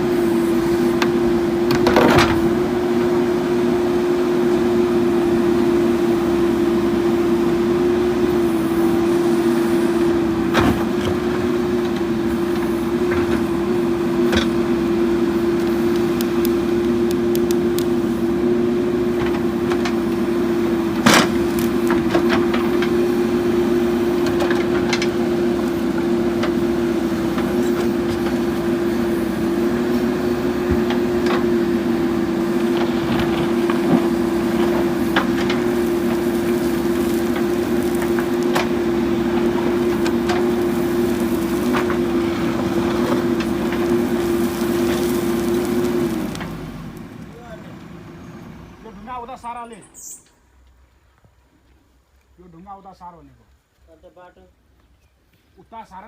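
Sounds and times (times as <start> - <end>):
diesel engine running steadily: 0.0 - 51.8.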